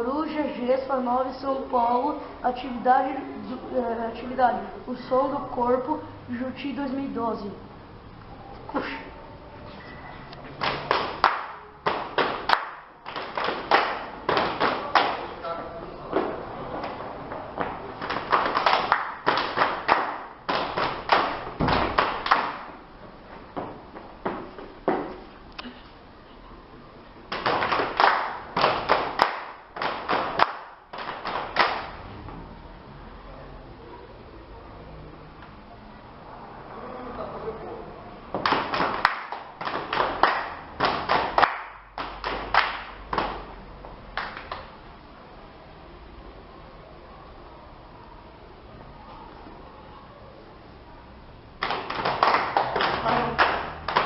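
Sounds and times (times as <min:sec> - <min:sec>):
group clapping hands: 0:10.3 - 0:15.4, 0:16.1 - 0:22.8, 0:27.3 - 0:32.0, 0:38.4 - 0:44.8, 0:51.6 - 0:54.0.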